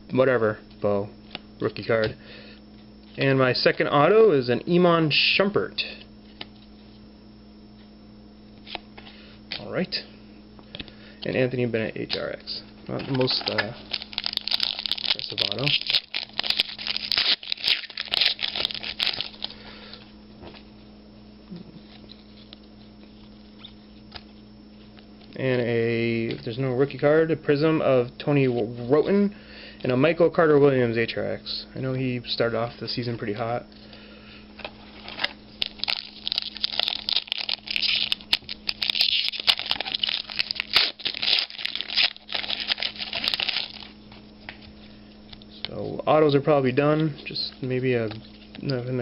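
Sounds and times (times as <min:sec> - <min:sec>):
faint steady hum: 0:00.0 - 0:49.0
wrapper tearing and crinkling: 0:13.2 - 0:19.6, 0:35.0 - 0:44.0.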